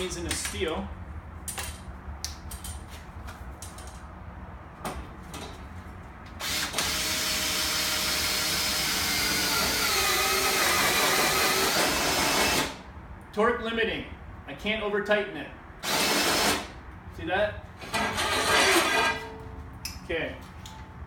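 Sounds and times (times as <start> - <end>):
drill driving screw: 6.4 - 12.8, 15.8 - 16.7.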